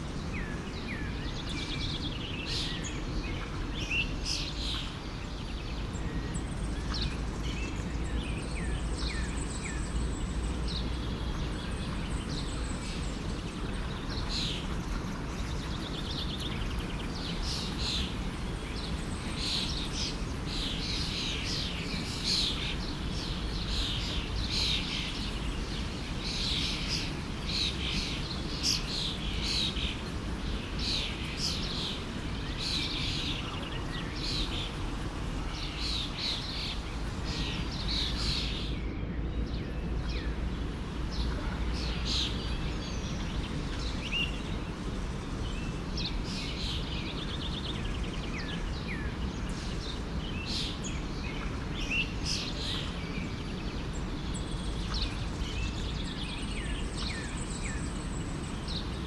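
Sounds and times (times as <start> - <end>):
songbirds chirping: 0.0 - 59.0
forest stream rushing: 15.5 - 38.8, 39.8 - 59.0.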